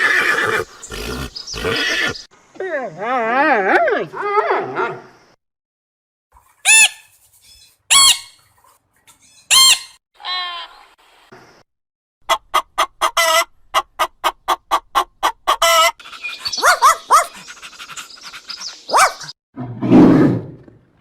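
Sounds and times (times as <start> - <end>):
dog barking: 16.5 - 17.4, 18.9 - 19.3.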